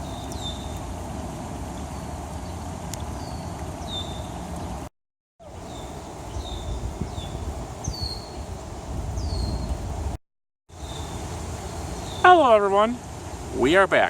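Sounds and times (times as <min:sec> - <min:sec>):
small birds chirping: 0:00.0 - 0:00.9, 0:01.8 - 0:04.8, 0:05.4 - 0:10.1, 0:10.7 - 0:12.5
outdoor hiss and low rumble: 0:00.0 - 0:14.0.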